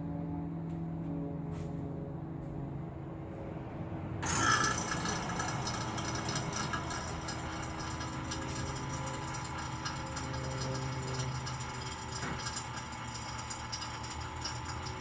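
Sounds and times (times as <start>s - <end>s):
vacuum pump rattling buzz: 4.2s - 15.0s.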